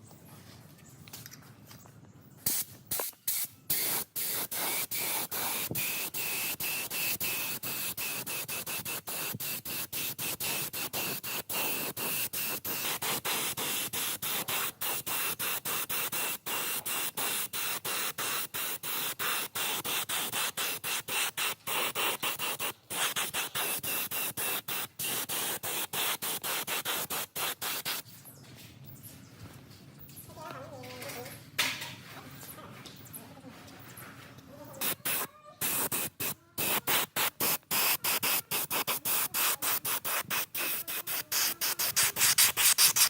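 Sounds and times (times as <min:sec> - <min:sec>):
compressed air spray hissing: 0:02.4 - 0:28.1, 0:34.8 - 0:43.0.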